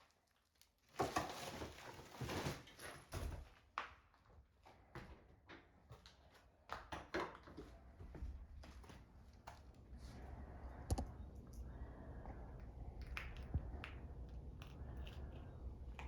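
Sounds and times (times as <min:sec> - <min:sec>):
low steady hum: 0:08.3 - 0:16.0.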